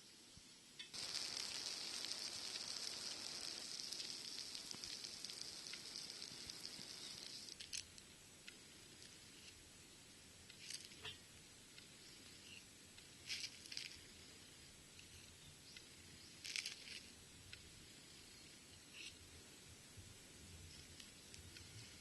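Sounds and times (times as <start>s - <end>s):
fish deep-frying in hot oil: 0.2s - 7.6s
faint clicks: 0.8s - 9.6s, 20.7s - 22.0s.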